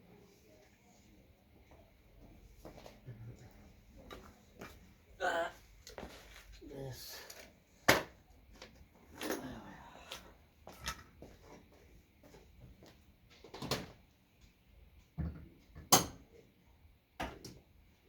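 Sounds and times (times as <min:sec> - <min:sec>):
objects knocking and clunking: 0:15.2 - 0:16.2.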